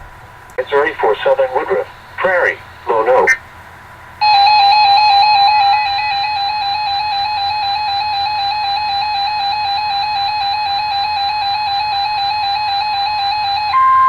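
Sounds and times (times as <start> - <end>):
two-tone electronic alarm warble: 4.2 - 14.0.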